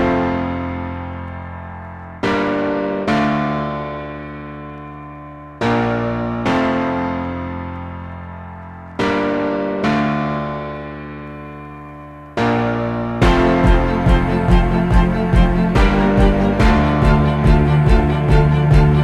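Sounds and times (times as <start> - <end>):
slow piano chords: 0.0 - 19.0.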